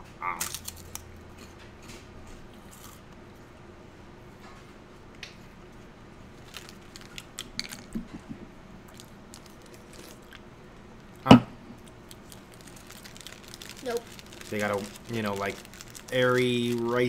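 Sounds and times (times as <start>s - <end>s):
people chewing crunchy snack: 0.4s - 3.2s, 6.4s - 8.2s, 8.8s - 10.5s, 11.8s - 17.0s.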